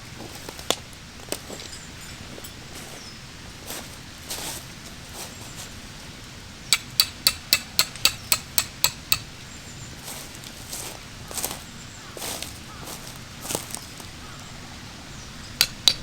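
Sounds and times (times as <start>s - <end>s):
hammer strikes on metal: 6.7s - 9.3s.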